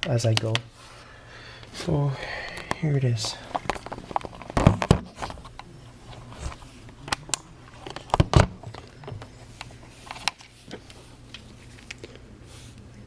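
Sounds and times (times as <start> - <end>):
camera handling clicks and knocks: 3.5 - 10.5.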